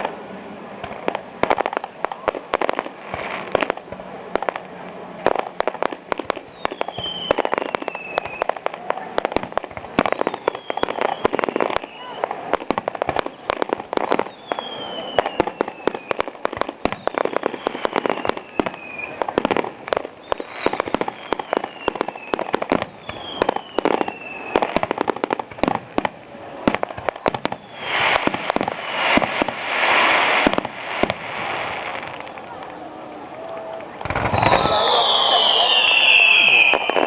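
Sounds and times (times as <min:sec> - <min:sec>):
fireworks cracking and popping: 0:00.0 - 0:37.0
firework whistles falling in pitch: 0:06.5 - 0:08.6, 0:10.1 - 0:12.3, 0:14.1 - 0:16.2, 0:16.8 - 0:19.2, 0:20.2 - 0:24.8, 0:27.4 - 0:31.1, 0:34.1 - 0:37.0.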